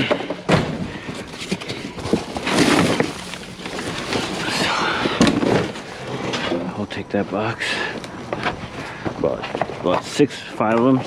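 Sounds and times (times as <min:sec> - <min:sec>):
cardboard scraping in metal dumpster: 0:00.5 - 0:06.7.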